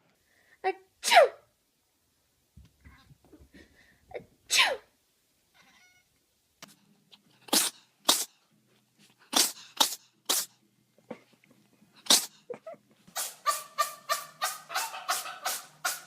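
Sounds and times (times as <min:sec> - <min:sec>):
cats sneezing: 0:01.0 - 0:01.4, 0:04.5 - 0:04.9, 0:07.4 - 0:08.4, 0:09.2 - 0:11.3, 0:12.0 - 0:16.0.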